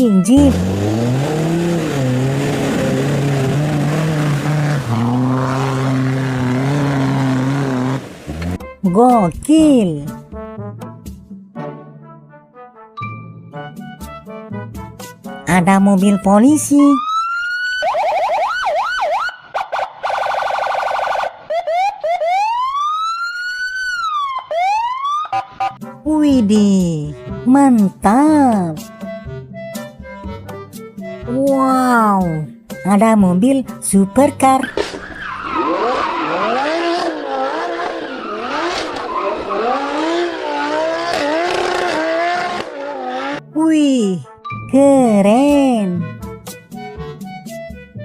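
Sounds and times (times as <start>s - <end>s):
sports car engine revving: 0.3s - 8.7s, 34.7s - 43.5s
electronic police siren: 16.8s - 25.8s, 34.7s - 41.9s.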